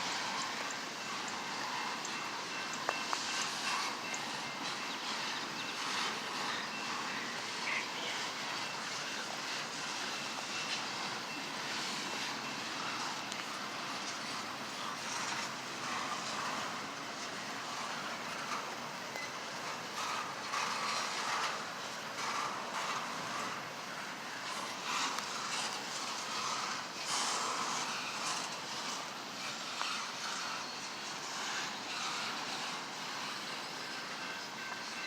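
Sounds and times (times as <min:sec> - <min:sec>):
train wheels rumbling on rail: 0:00.0 - 0:35.0.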